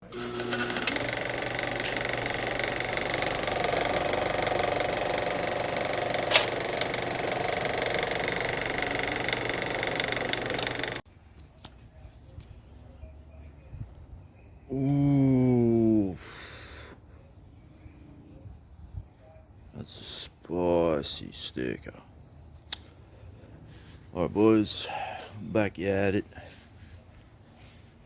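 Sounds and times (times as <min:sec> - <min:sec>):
mechanical buzzing rattle: 0:00.0 - 0:11.0
background noise: 0:11.1 - 0:28.0.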